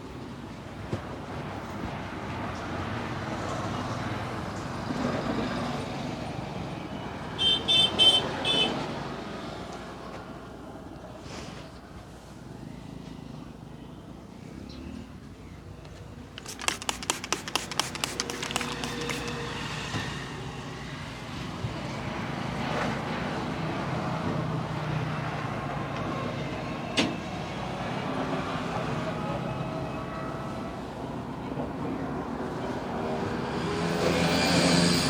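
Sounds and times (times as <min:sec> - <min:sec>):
roadside traffic noise: 0:00.0 - 0:35.0
hands slapping a head: 0:16.4 - 0:19.5.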